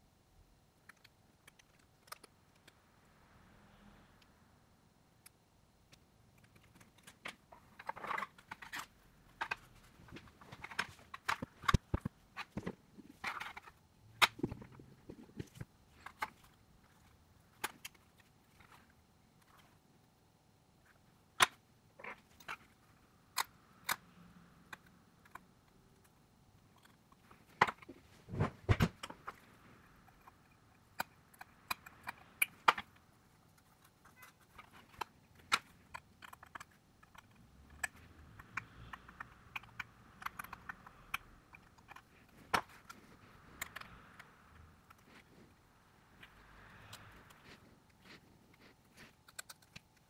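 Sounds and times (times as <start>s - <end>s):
small tools clicking and tapping: 0.8s - 2.8s, 30.0s - 45.2s, 49.0s - 50.0s.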